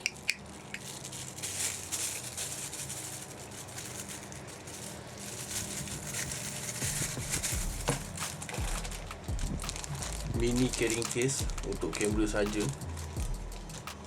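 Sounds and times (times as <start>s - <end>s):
plastic packaging rustling: 0.0s - 14.0s.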